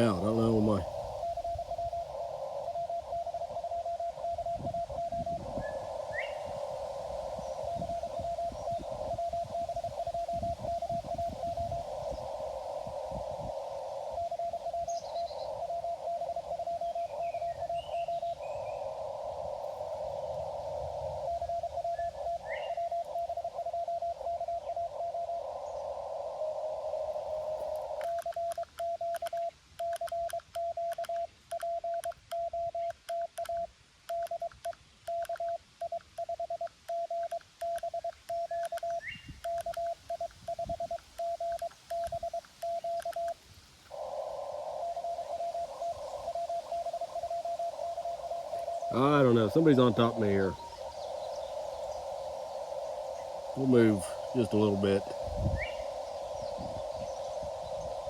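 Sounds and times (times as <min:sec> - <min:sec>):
radio hiss: 0:00.0 - 0:01.3, 0:41.2 - 0:58.0
small clicks: 0:28.0 - 0:39.9.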